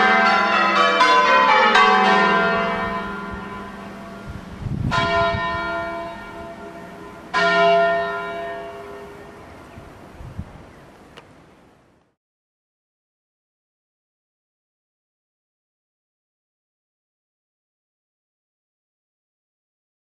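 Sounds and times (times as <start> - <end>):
church bells ringing: 0.0 - 10.0.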